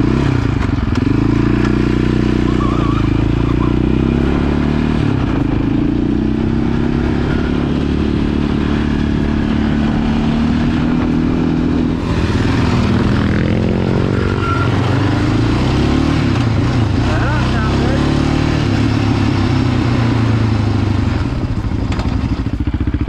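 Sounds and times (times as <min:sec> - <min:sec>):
quad engine revving: 0:00.0 - 0:23.0.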